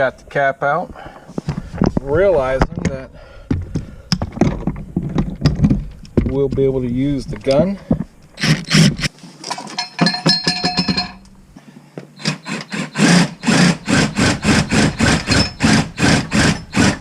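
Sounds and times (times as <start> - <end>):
metallic clicking and ringing: 9.5 - 11.4
impact wrench hammering lug nuts: 9.8 - 11.3, 12.2 - 17.0.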